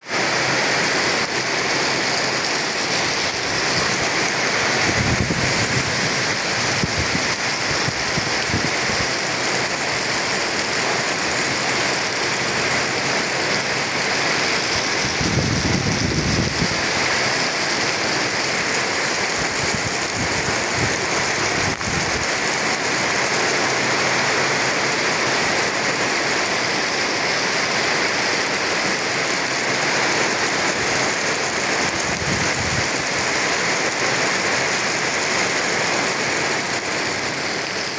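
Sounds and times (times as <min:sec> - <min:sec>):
heavy rain pouring: 0:00.0 - 0:37.9.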